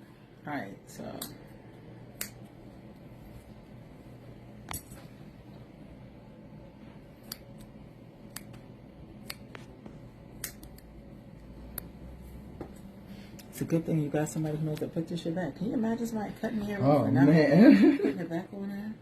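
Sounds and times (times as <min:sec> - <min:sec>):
scissors snipping hair: 0:02.2 - 0:02.5, 0:04.6 - 0:05.0, 0:07.2 - 0:08.6, 0:09.2 - 0:09.7, 0:10.3 - 0:10.9.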